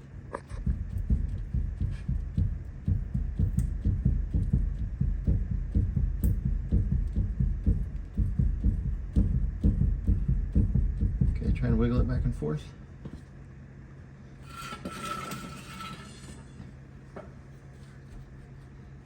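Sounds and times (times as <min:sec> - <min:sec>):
machine throbbing: 0:00.0 - 0:12.6.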